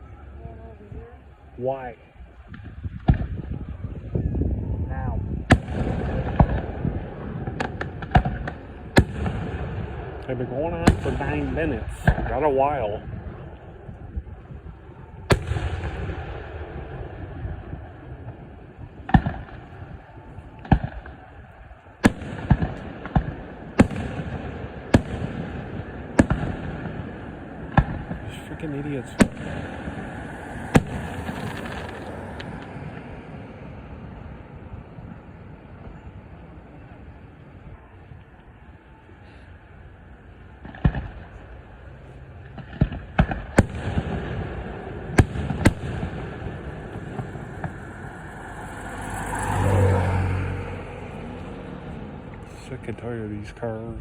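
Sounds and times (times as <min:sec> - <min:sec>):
fireworks bursting in sharp bangs: 0:05.4 - 0:13.5, 0:15.2 - 0:36.1, 0:40.5 - 0:41.7, 0:42.4 - 0:48.3.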